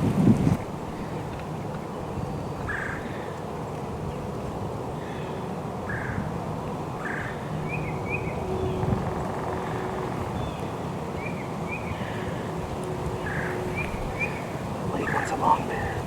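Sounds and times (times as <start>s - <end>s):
low background hiss: 12.9s - 16.0s
wild turkey gobbling: 14.9s - 16.0s.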